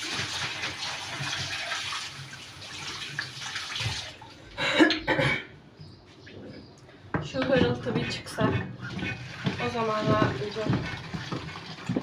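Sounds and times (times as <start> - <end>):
kitchen tap running: 0.0 - 4.4, 7.4 - 12.0
woman coughing: 4.6 - 5.6.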